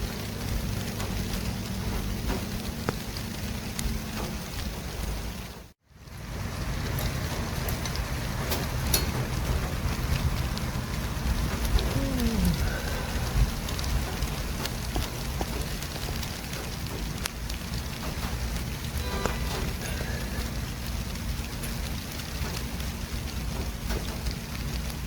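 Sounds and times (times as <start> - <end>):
low rumble of traffic: 0.0 - 25.0.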